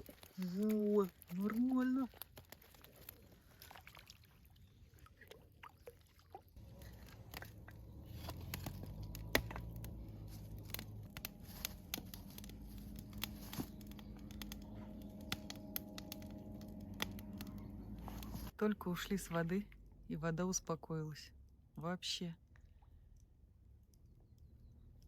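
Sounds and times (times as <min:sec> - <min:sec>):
low engine drone: 0:06.6 - 0:20.3.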